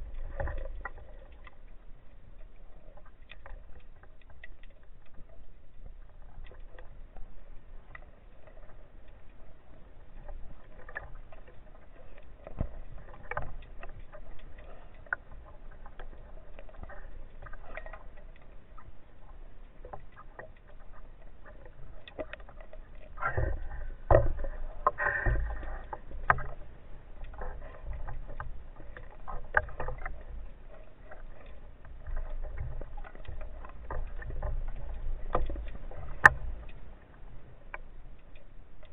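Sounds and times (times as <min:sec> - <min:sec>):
low underwater rumble: 0:00.0 - 0:38.9
underwater clicks and crackle: 0:00.0 - 0:38.9.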